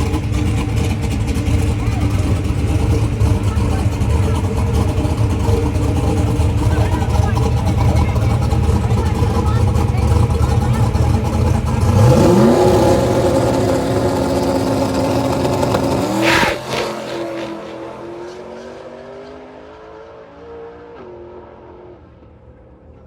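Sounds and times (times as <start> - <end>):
car engine revving: 0.0 - 22.3
sharp engine burst: 11.8 - 17.8.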